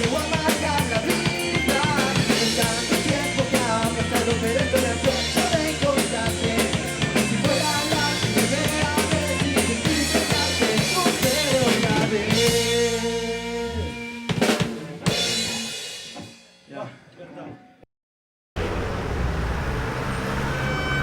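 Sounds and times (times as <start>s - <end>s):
rock band playing: 0.0s - 16.5s.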